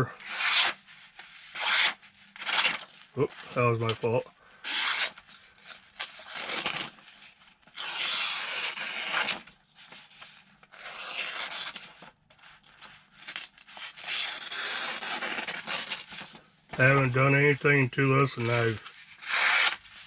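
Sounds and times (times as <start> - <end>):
knife slicing through paper: 0.1 - 4.0, 7.7 - 12.0, 13.8 - 17.1, 18.4 - 20.0.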